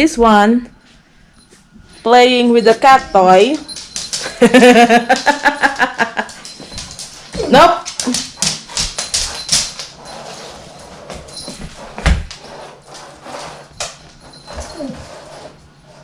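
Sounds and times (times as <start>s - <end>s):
dog whining: 14.3s - 15.4s.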